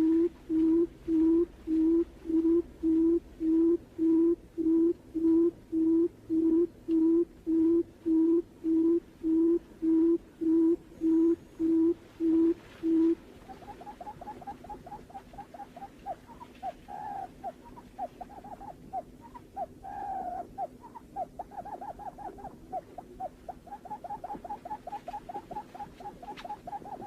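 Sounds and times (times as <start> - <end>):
bird low hooting call: 0.0 - 27.0.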